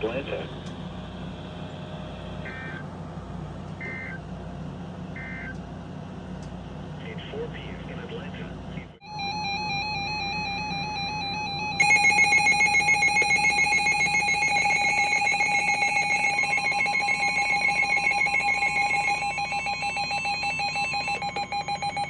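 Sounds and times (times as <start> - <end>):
warbling electronic alert tone: 9.0 - 22.0.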